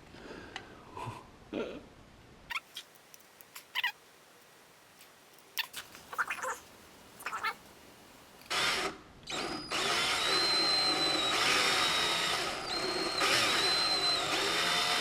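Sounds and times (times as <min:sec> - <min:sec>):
power drill driving a screw: 0:08.5 - 0:15.0.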